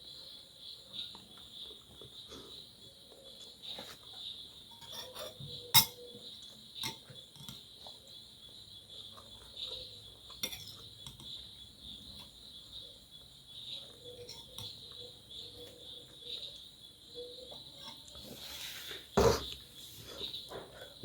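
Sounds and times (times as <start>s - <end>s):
crickets chirring: 0.0s - 21.0s
cutlery clinking on a plate: 4.7s - 6.1s, 6.8s - 7.6s, 10.4s - 11.3s.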